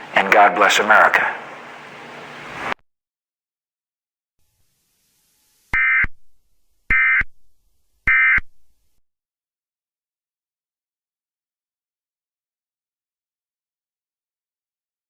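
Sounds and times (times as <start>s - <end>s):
data tone bursts: 5.8s - 6.2s, 6.9s - 7.3s, 8.1s - 8.5s.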